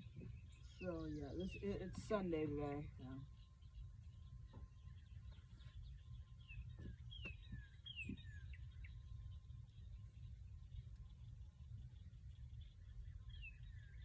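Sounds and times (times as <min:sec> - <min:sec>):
birds chirping: 0:00.0 - 0:14.0
low steady rumble: 0:00.0 - 0:14.0.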